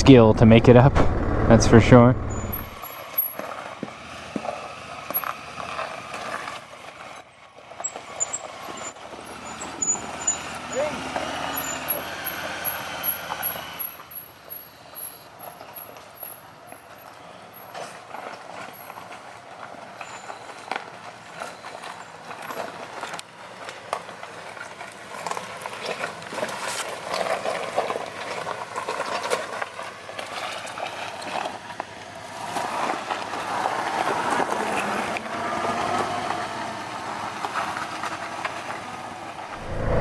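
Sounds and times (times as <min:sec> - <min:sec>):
quad bike engine running: 0:07.8 - 0:13.9.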